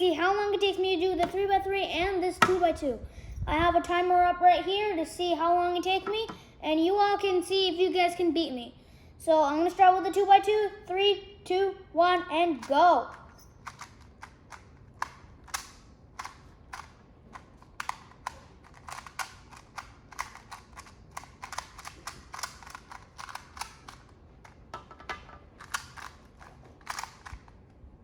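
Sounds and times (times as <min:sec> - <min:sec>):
puzzle cube plastic clicks: 0:12.6 - 0:27.6.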